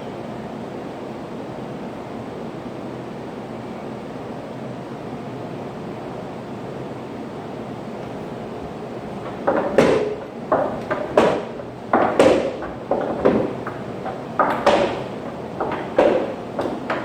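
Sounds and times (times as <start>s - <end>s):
dull thuds: 8.9s - 17.0s.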